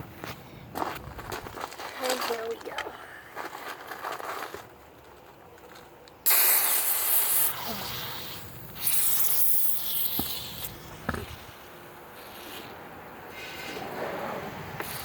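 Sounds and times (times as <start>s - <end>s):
soda gas hissing and spraying: 6.2s - 15.0s.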